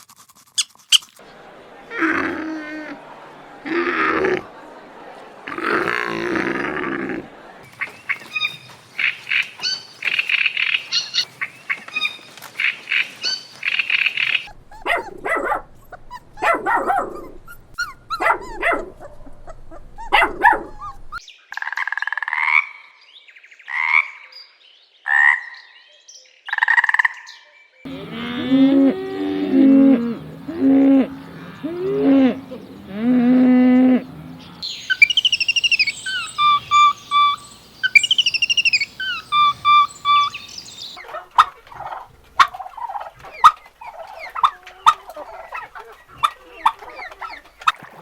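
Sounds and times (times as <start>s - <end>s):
farm animal calls: 1.0s - 4.6s, 5.4s - 21.0s, 27.9s - 48.0s
cow mooing: 1.9s - 3.0s, 27.9s - 34.6s.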